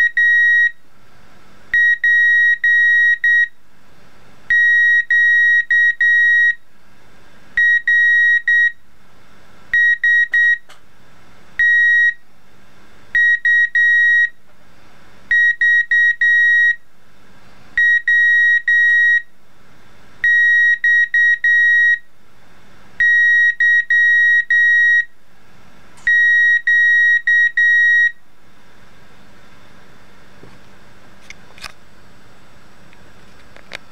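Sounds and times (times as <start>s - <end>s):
high-pitched morse code beeps: 9.8s - 10.7s.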